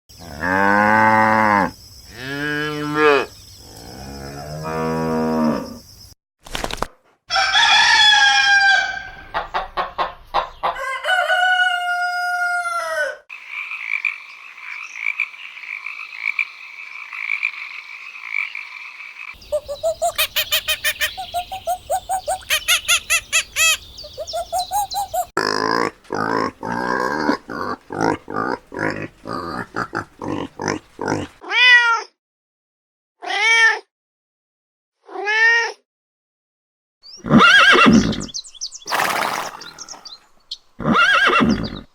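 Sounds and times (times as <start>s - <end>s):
rooster crowing: 7.3s - 9.3s, 10.7s - 13.2s
chickens clucking and chirping: 9.2s - 10.8s, 19.4s - 25.3s.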